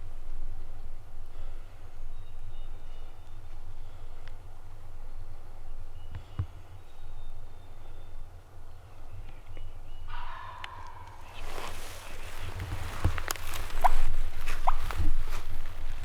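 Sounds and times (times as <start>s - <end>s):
turkey gobbling: 10.1s - 16.0s.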